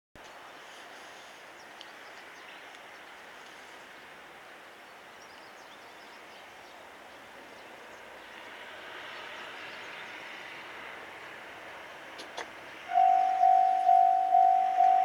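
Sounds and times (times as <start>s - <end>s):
train rushing on rails: 8.3s - 15.0s.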